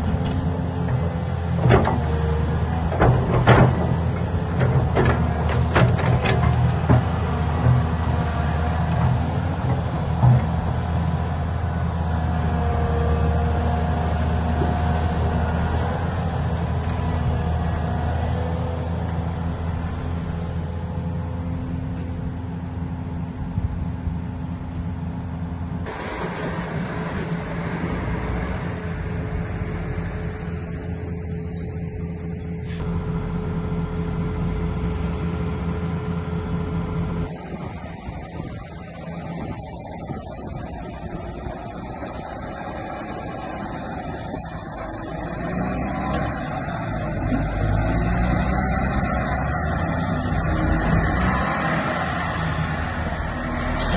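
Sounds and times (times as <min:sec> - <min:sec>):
diesel machinery droning: 0:00.0 - 0:53.9.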